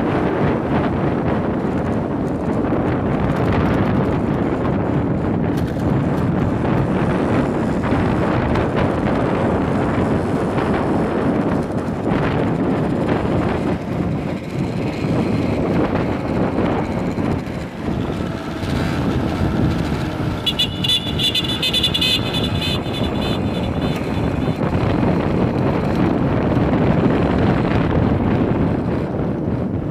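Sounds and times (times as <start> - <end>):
wind on microphone: 0.0 - 29.9
motorcycle engine running: 0.1 - 29.9
high-pitched tone: 20.5 - 24.3.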